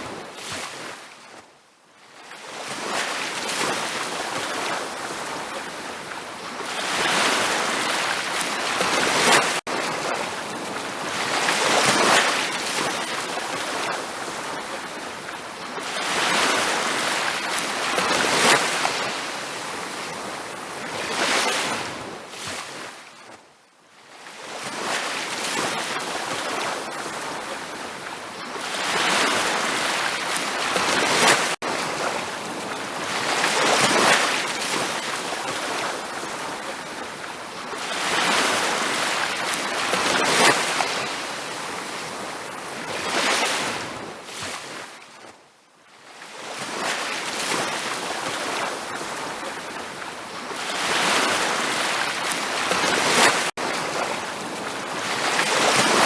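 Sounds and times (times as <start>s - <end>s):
ocean surf on beach: 0.0s - 45.4s, 46.0s - 56.0s.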